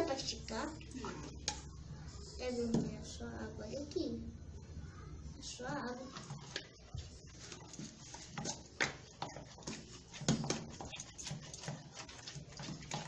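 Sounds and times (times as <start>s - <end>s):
slime squelching while stirred: 5.6s - 13.0s.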